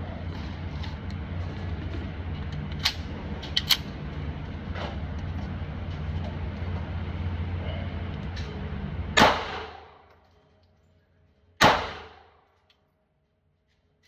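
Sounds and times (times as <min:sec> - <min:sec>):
pistol shots with echo: 0:09.2 - 0:09.9, 0:11.6 - 0:12.3.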